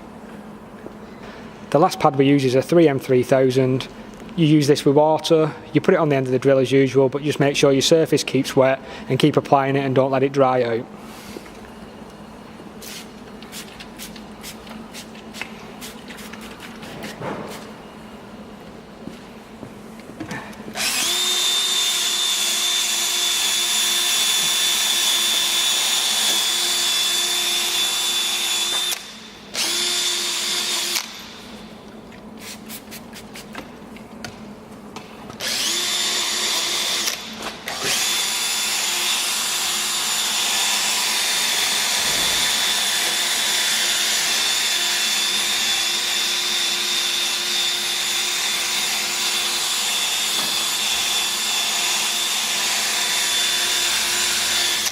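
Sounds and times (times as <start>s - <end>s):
drill whining: 20.8s - 31.4s, 35.4s - 54.9s.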